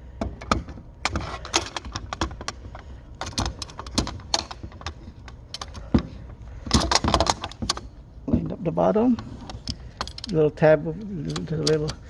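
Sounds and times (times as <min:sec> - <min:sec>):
metal clicks and rattles: 0:00.1 - 0:12.0.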